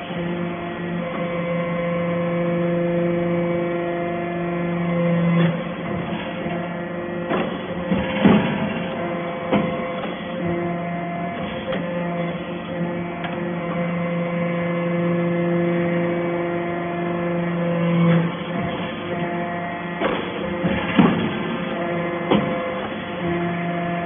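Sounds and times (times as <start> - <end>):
machine hum: 0.0 - 24.0
sharp metal knocks and clanks: 7.3 - 10.2, 20.0 - 21.7.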